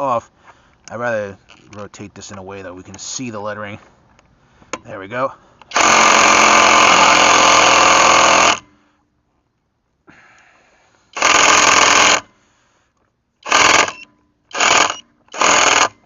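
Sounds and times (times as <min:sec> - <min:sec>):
impact wrench hammering: 0:13.4 - 0:15.9.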